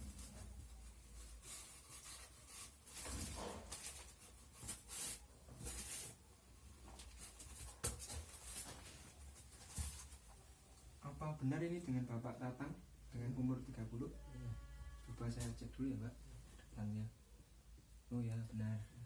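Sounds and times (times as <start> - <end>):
rustling and handling noises: 0.0 - 11.0.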